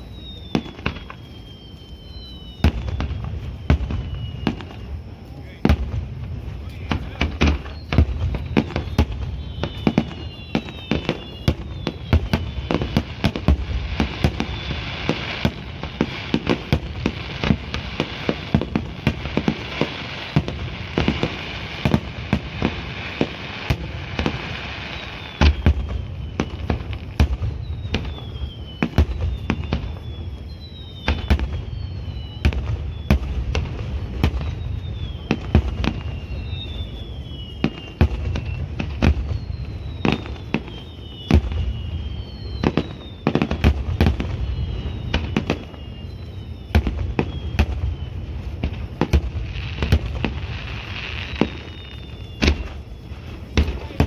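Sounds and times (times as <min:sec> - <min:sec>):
fireworks banging: 0:00.0 - 0:54.0
fireworks whistling: 0:00.0 - 0:54.0.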